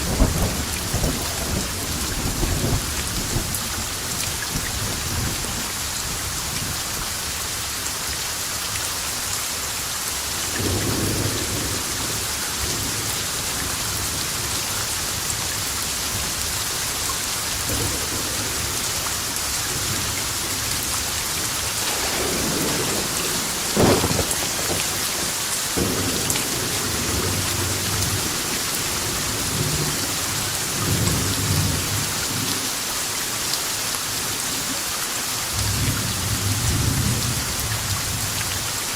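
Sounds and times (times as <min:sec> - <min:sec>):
sharp thunderclap: 0:00.0 - 0:03.6, 0:19.7 - 0:30.0
thunder rumbling: 0:00.0 - 0:03.9, 0:17.6 - 0:32.0
heavy rain hissing: 0:00.0 - 0:38.9.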